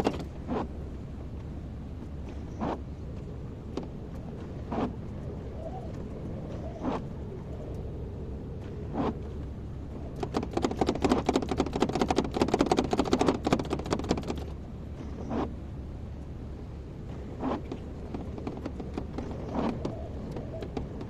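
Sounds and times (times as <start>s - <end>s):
excavator engine hum: 0.0s - 21.0s.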